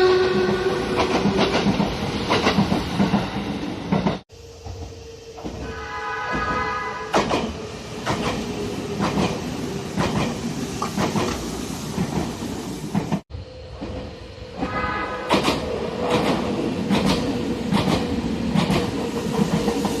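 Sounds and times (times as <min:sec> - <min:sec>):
train horn blast: 0:00.0 - 0:01.1, 0:05.6 - 0:07.2, 0:14.6 - 0:15.4
train wheels clacking: 0:00.3 - 0:04.8, 0:06.3 - 0:13.2, 0:13.8 - 0:20.0.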